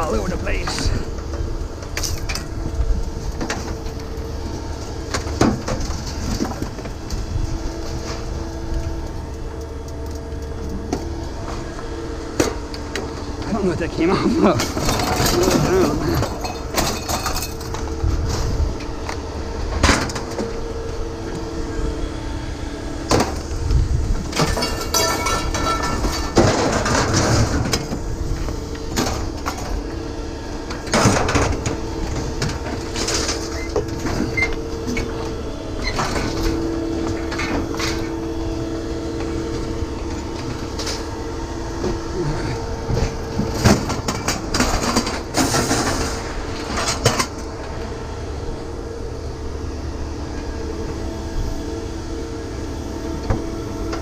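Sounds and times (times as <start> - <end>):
steady machine hum: 0.0 - 54.0
scrap metal clanking: 42.3 - 47.4.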